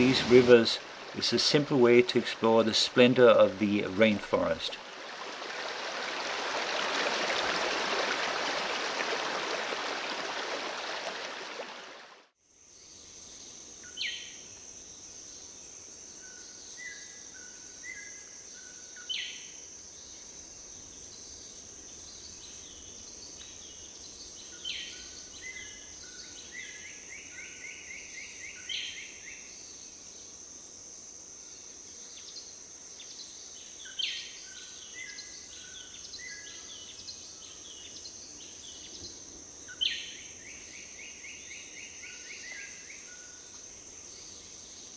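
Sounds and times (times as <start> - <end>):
birds calling: 0.0 - 12.2
rushing river water: 0.0 - 12.3
high insect drone: 0.0 - 44.9.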